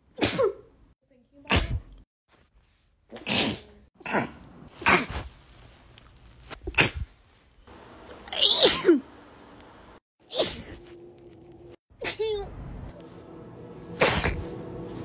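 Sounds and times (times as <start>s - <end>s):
person sneezing: 0.1s - 0.7s, 1.5s - 1.9s, 3.1s - 5.3s, 6.6s - 7.1s, 8.4s - 9.0s, 10.3s - 10.8s, 14.0s - 14.5s.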